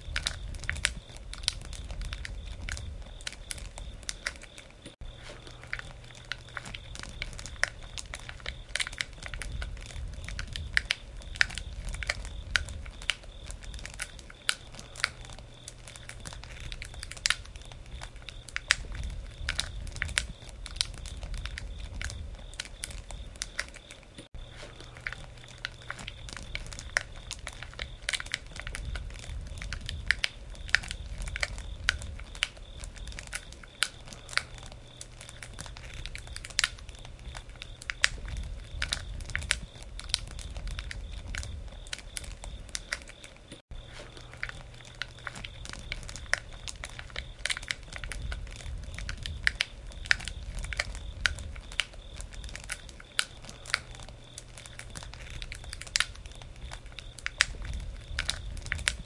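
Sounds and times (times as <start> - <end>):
campfire crackling and popping: 0.0 - 59.0.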